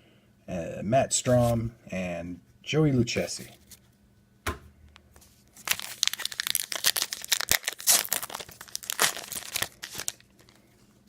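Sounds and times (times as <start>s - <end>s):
wrapper crinkling: 5.2s - 11.0s
card pack wrapper tearing: 5.6s - 10.6s.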